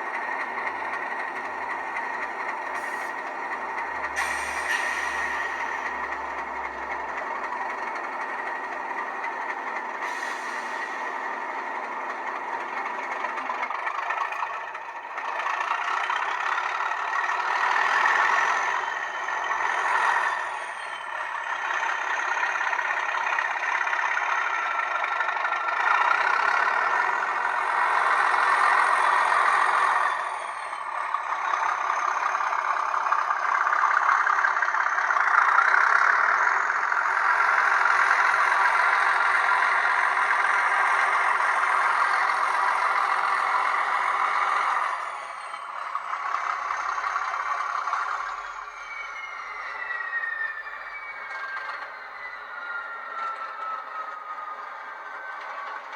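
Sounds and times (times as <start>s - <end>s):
recorded diesel engine revving: 0.0s - 55.9s
high whistle: 48.2s - 54.6s.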